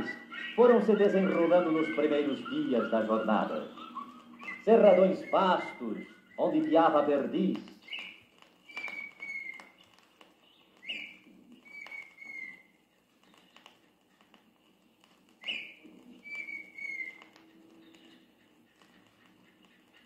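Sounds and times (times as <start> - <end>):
tinamou whistling: 0.0 - 10.1, 10.8 - 12.8, 15.4 - 18.4.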